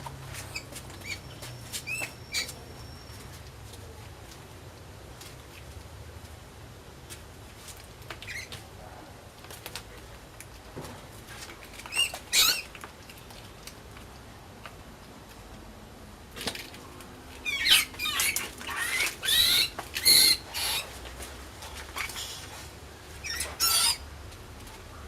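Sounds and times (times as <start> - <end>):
mouse squeaking: 0.4 - 3.2, 8.2 - 8.6, 11.8 - 12.8, 17.4 - 20.9, 23.2 - 24.1.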